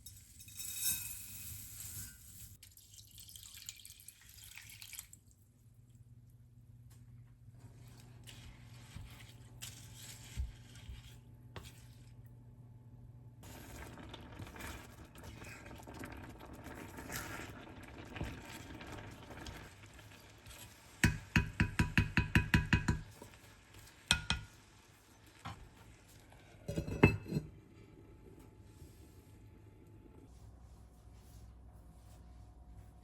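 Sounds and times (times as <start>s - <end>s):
stirring and scraping in a pot: 0.0s - 2.6s, 7.5s - 12.4s, 13.4s - 27.6s
utensil knocking on dish: 21.0s - 23.1s, 24.1s - 24.5s.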